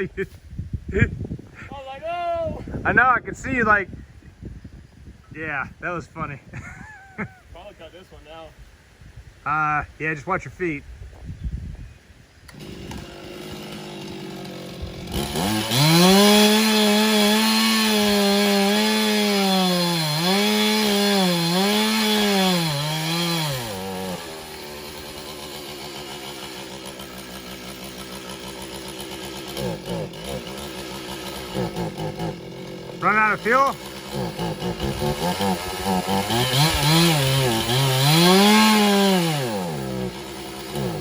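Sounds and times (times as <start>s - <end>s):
chainsaw idling and revving: 12.5s - 41.0s.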